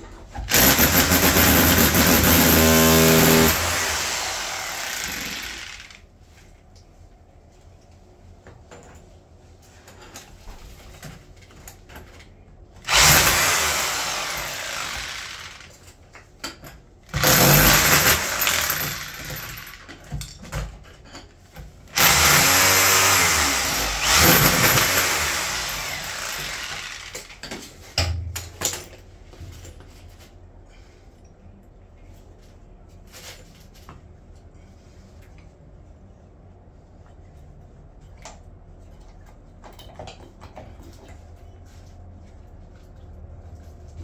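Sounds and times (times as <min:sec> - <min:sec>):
power tool running: 0:00.5 - 0:06.0, 0:12.9 - 0:15.8, 0:17.2 - 0:19.8, 0:22.0 - 0:27.3.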